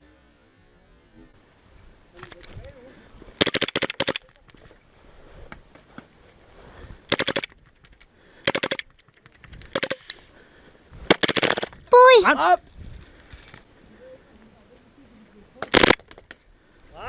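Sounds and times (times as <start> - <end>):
airsoft gun rapid clicking shots: 3.4 - 4.6, 7.1 - 10.2, 11.1 - 11.8, 15.6 - 16.4.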